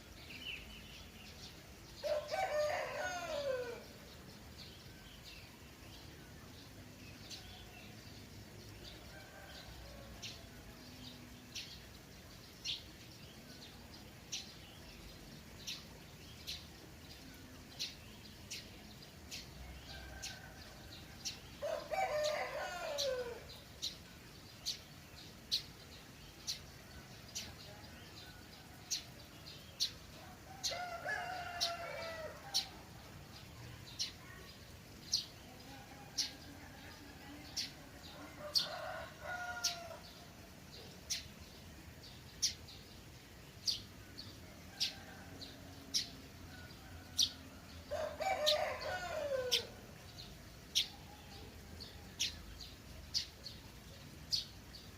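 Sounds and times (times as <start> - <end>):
rooster crowing: 2.0 - 3.9, 21.6 - 23.5, 30.2 - 32.7, 38.2 - 40.0, 46.8 - 49.7.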